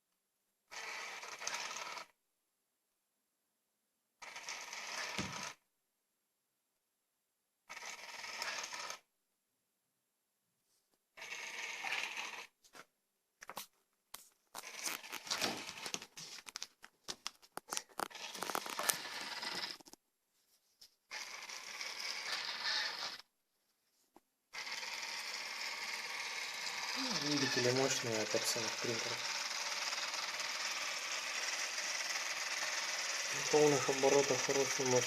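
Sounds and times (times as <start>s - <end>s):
robot vacuum wheels whirring: 0.7s - 2.1s, 4.2s - 5.6s, 7.7s - 9.0s, 11.2s - 12.5s, 14.6s - 16.6s, 18.0s - 20.0s, 21.1s - 23.2s, 24.5s - 35.0s
sharp clicks and scrapes: 13.4s - 20.0s.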